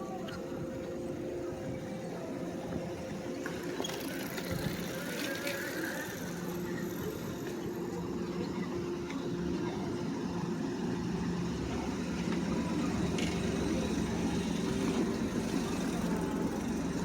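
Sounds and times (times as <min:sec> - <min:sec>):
street noise: 0:00.0 - 0:17.0
vehicle engine idling: 0:04.5 - 0:17.0.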